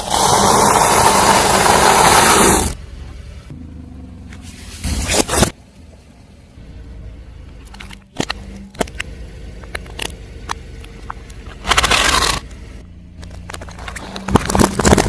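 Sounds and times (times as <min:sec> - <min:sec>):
low engine hum: 0:02.4 - 0:15.0
loud crunch: 0:11.4 - 0:12.6, 0:13.2 - 0:15.0
tyre crushing objects: 0:13.5 - 0:15.0.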